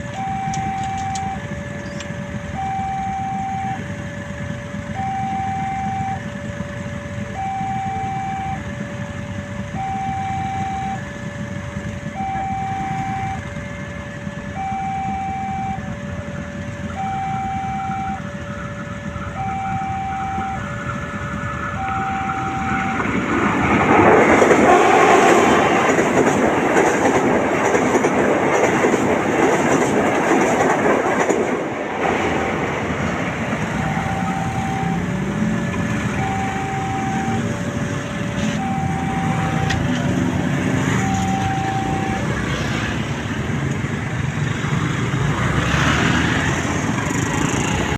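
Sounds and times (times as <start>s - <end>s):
two-tone level crossing siren: 0.0s - 27.8s, 29.4s - 43.7s
train passing rattling: 15.7s - 47.9s.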